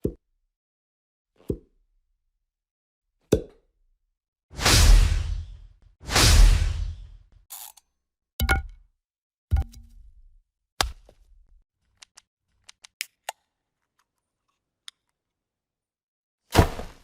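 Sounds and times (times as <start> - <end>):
deep impact effect: 4.6 - 7.1
swoosh hit effect: 4.6 - 7.2.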